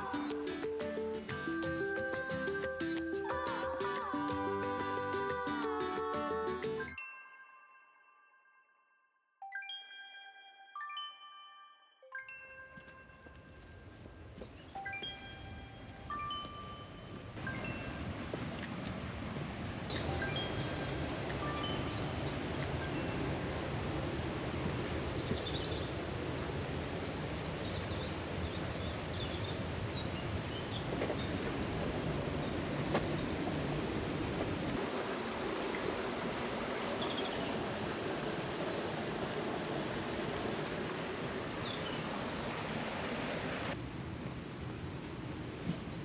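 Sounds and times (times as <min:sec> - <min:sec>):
river water rushing: 0:00.0 - 0:07.0, 0:17.4 - 0:44.1.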